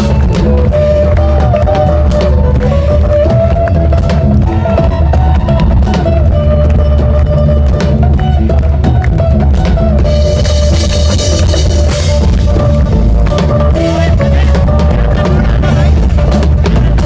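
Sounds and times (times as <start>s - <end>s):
loud music with drums and bass: 0.0s - 17.0s.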